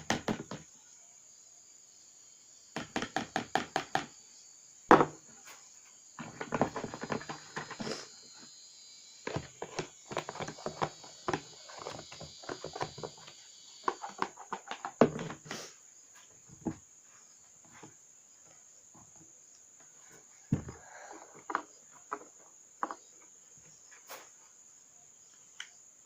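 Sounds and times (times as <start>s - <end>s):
containers tapping and knocking: 2.8s - 4.1s, 6.2s - 8.0s, 9.2s - 15.5s
faint high hiss: 7.1s - 14.2s.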